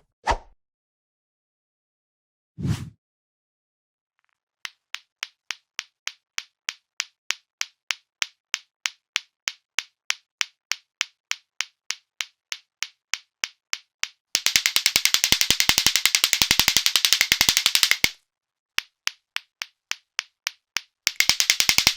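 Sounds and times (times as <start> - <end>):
clacker balls clacking: 4.7 - 18.2, 18.8 - 21.9.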